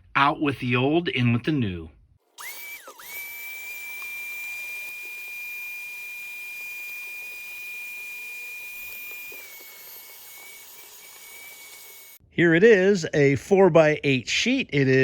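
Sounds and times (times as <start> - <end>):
small electric motor whining: 2.4 - 12.2.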